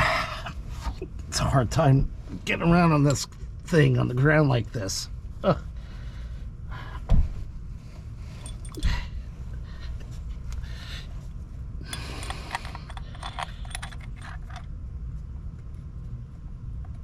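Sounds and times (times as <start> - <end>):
steady low hum: 0.0 - 17.0
thump: 7.1 - 7.4
tools clinking on metal: 8.4 - 9.0, 11.9 - 14.6.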